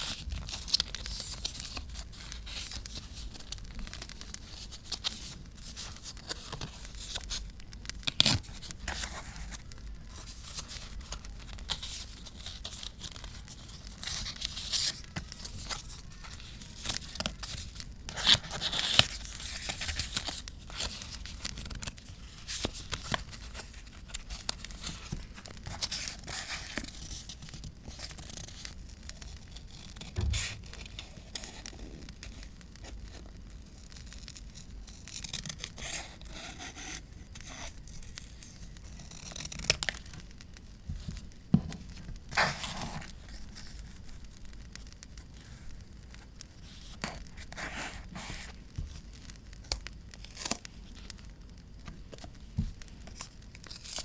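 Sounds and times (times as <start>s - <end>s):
paper tearing and crinkling: 8.0s - 32.5s, 34.2s - 40.2s, 42.3s - 43.9s, 53.1s - 54.0s.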